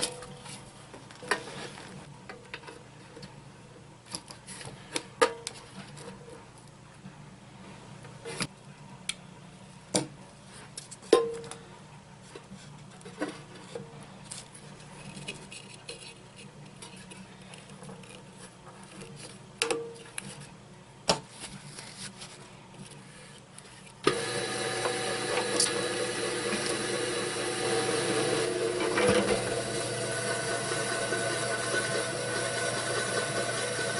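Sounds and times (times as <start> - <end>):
rock tumbler motor running: 24.1 - 33.9.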